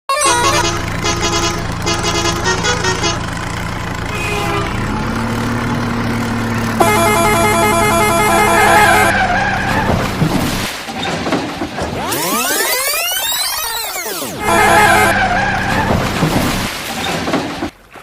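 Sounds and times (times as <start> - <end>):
vehicle engine drone: 0.1 - 10.7, 11.8 - 16.8
held horn-like tone: 0.2 - 5.2, 6.8 - 9.9, 14.4 - 15.9.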